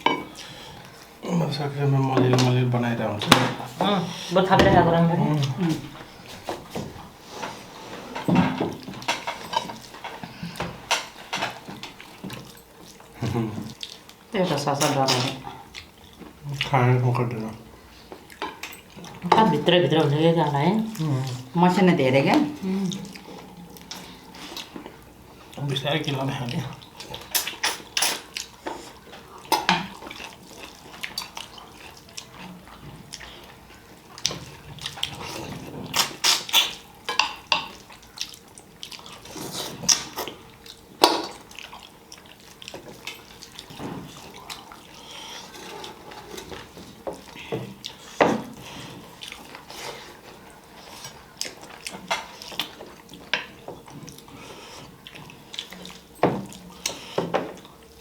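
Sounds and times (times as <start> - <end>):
dishes clinking: 0.0 - 0.4, 6.7 - 12.7, 27.3 - 28.3
person chewing: 8.8 - 14.3, 22.6 - 25.6, 26.5 - 58.0.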